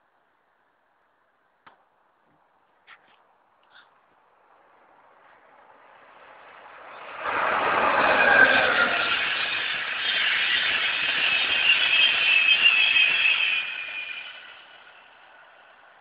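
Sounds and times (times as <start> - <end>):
train passing at speed: 4.2 - 16.0.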